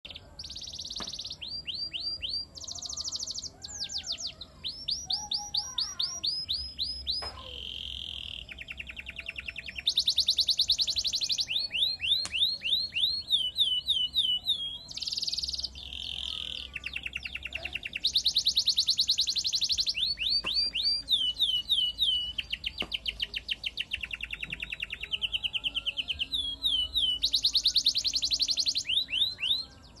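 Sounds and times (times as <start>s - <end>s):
canary singing rapid trills: 0.0s - 30.0s.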